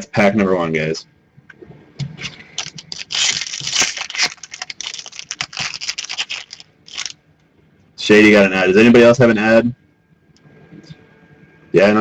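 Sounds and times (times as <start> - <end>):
card packaging crinkling: 2.2 - 7.2.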